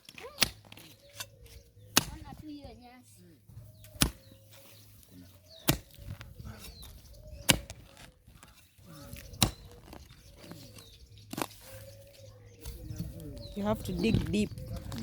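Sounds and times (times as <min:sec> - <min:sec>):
digging tool chopping into soil: 0:00.1 - 0:01.3, 0:01.9 - 0:02.3, 0:03.8 - 0:04.4, 0:05.6 - 0:08.1, 0:09.2 - 0:10.0.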